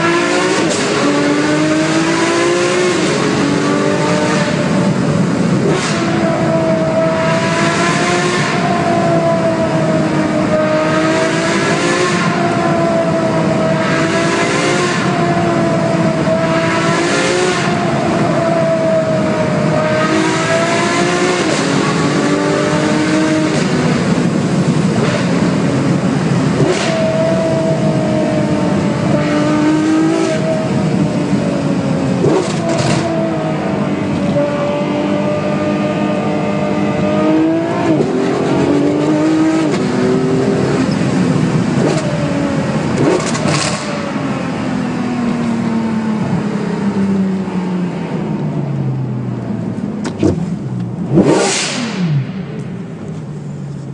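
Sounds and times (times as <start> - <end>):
car engine revving through gears: 0.0 - 53.3.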